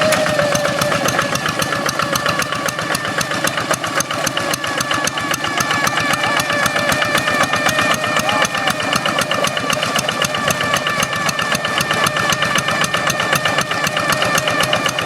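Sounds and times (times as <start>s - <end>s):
diesel engine chugging: 0.0s - 15.0s
wavering whine: 5.3s - 15.0s.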